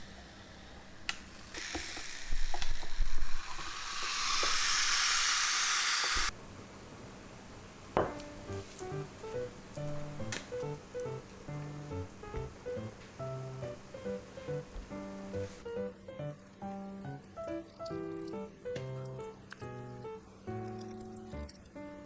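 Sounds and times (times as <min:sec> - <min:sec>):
food sizzling in waffle maker: 0:00.0 - 0:06.4
light background music: 0:08.0 - 0:22.0.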